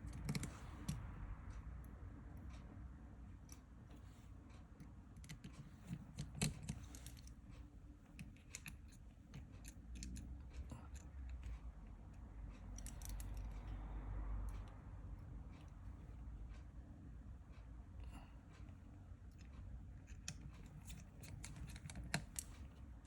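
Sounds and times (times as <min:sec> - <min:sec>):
metal tools clicking and tapping: 0:00.0 - 0:01.0, 0:08.2 - 0:11.6, 0:12.7 - 0:13.6, 0:19.4 - 0:22.7
low steady hum: 0:00.0 - 0:23.0.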